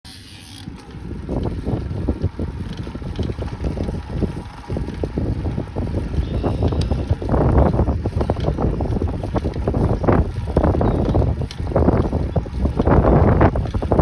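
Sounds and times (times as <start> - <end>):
irregular creaking: 0.1 - 1.4
wind buffeting microphone: 0.6 - 14.0.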